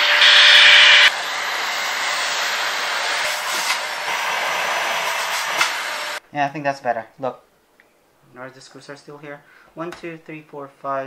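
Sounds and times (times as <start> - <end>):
vacuum cleaner hissing: 0.0 - 6.2.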